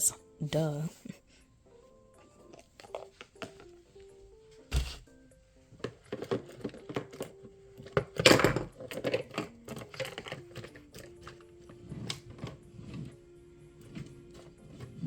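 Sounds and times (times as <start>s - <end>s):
small objects clicking and clattering: 5.8s - 13.1s.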